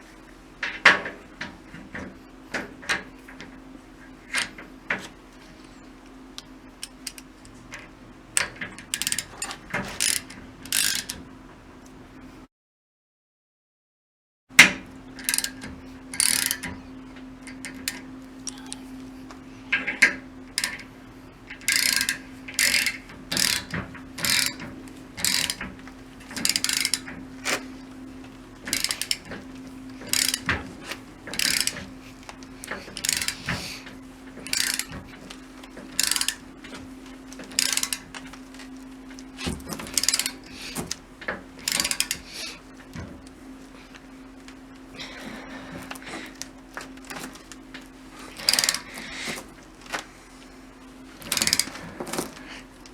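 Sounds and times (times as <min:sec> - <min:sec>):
ratchet wrench clicking: 0:06.8 - 0:07.3, 0:08.9 - 0:11.2, 0:15.2 - 0:16.7, 0:17.4 - 0:18.6, 0:20.6 - 0:20.8, 0:21.6 - 0:24.6, 0:25.2 - 0:25.6, 0:26.4 - 0:27.6, 0:28.7 - 0:29.3, 0:30.0 - 0:30.5, 0:31.3 - 0:31.8, 0:32.9 - 0:33.6, 0:34.4 - 0:34.9, 0:35.9 - 0:36.4, 0:37.5 - 0:38.1, 0:39.9 - 0:41.0, 0:41.6 - 0:42.4, 0:48.4 - 0:48.9, 0:51.3 - 0:51.8
steady hum: 0:14.5 - 0:52.9.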